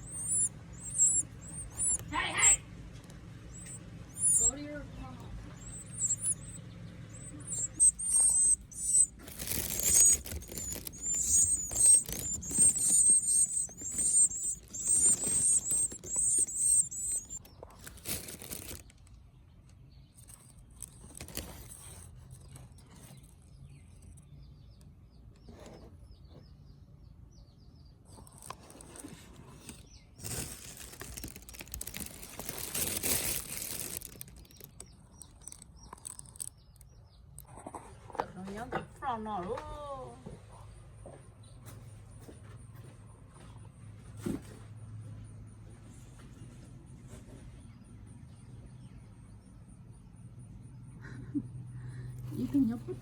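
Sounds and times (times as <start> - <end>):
baby birds chirping: 0.0 - 19.0, 20.0 - 39.9, 47.7 - 53.0
rustling: 5.5 - 19.2, 20.2 - 23.5, 28.2 - 36.8.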